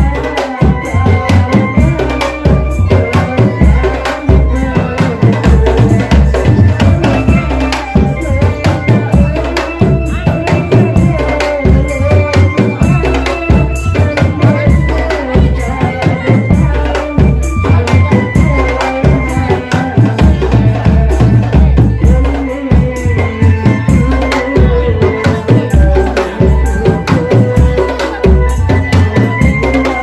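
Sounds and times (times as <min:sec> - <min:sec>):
bass drums pounding: 0:00.0 - 0:29.8
pitched melody: 0:00.0 - 0:30.0.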